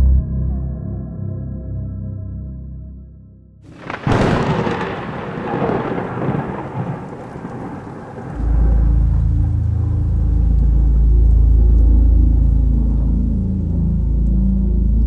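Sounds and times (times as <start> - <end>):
thunderclap: 3.7 - 11.9
rain hiss: 3.7 - 15.0
loud deep low drone: 5.5 - 15.0.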